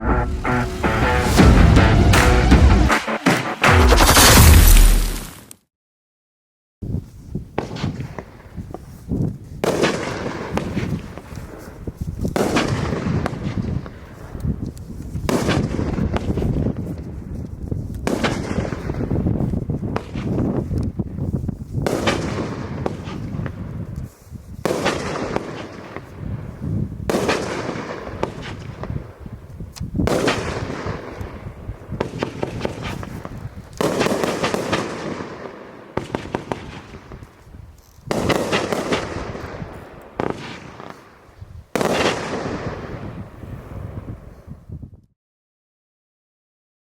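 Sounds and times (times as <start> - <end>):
fireworks bursts: 0.0 - 5.4
fireworks crackling: 0.0 - 5.5.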